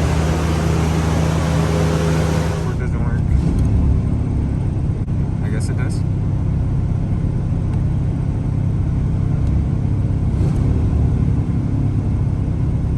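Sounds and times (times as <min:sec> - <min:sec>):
car engine rumbling: 0:00.0 - 0:05.3.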